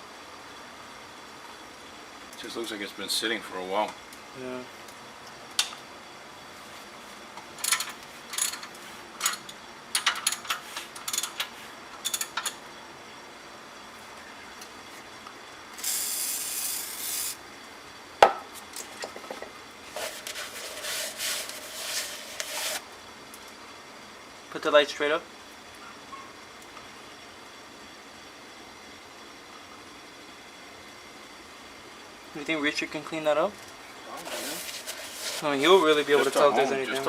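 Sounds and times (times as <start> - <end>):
tools clicking and scraping: 7.6 - 12.6.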